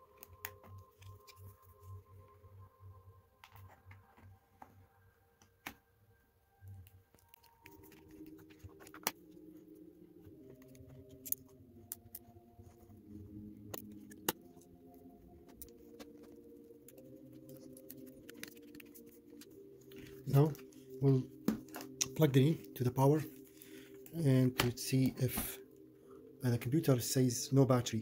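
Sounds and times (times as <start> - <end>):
soft background music: 0.0 - 28.0
laptop parts clicking and clinking: 10.5 - 12.2.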